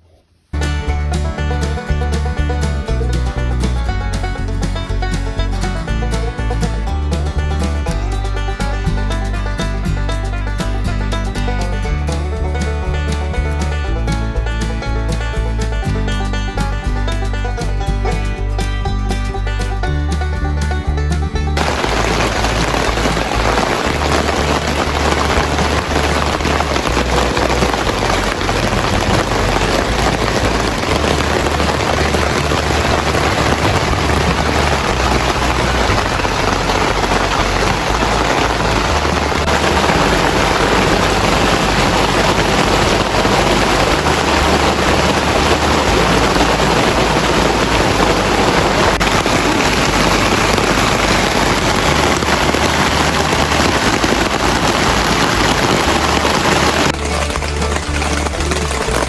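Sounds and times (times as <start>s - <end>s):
heavy rain falling: 0.6s - 17.8s, 21.5s - 59.0s.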